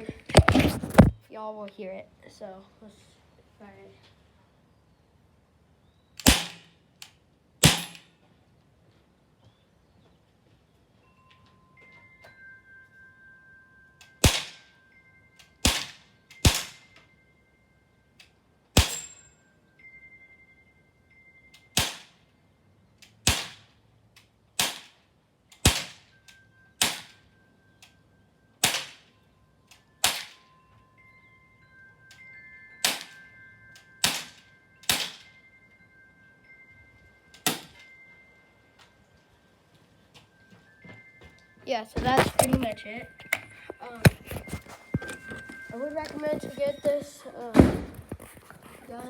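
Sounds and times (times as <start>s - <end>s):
bb pistol shots: 6.2s - 6.7s, 7.6s - 8.0s, 14.2s - 14.6s, 15.6s - 16.8s, 18.8s - 19.2s, 21.8s - 22.1s, 23.3s - 23.6s, 24.6s - 24.9s, 25.6s - 26.0s, 26.8s - 27.2s, 28.6s - 29.0s, 30.0s - 30.4s, 34.0s - 34.3s, 34.9s - 35.3s, 37.4s - 37.8s.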